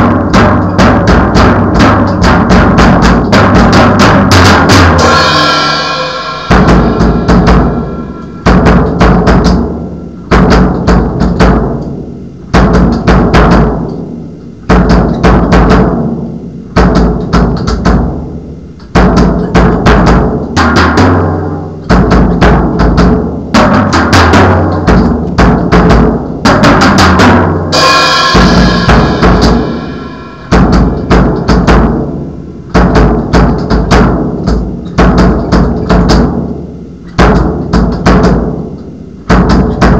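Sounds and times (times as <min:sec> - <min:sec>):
cymbal crashes: 0:00.0 - 0:11.2, 0:23.6 - 0:33.0
drum kit groove: 0:00.0 - 0:39.9.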